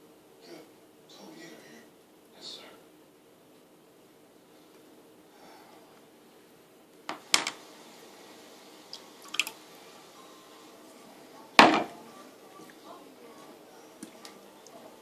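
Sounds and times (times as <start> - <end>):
water dripping: 8.9 - 9.6.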